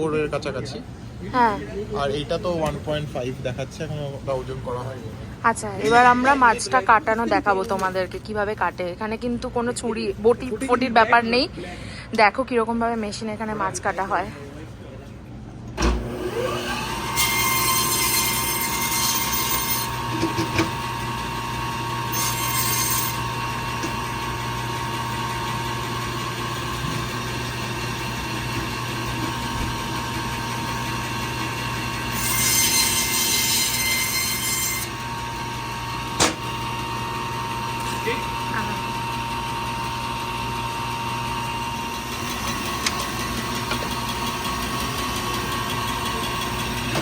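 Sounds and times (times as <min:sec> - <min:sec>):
band saw whine and hum: 0:15.7 - 0:47.0
saw blade cutting fish: 0:17.0 - 0:20.9, 0:22.0 - 0:23.4, 0:32.0 - 0:35.1.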